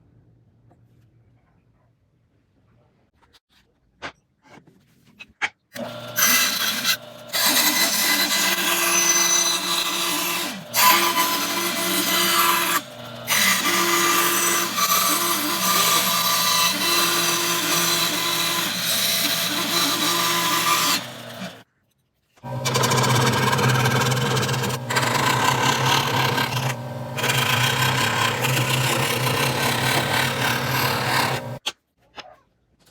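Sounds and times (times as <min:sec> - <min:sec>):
power tool cutting wood: 0:05.8 - 0:21.6, 0:22.4 - 0:31.6.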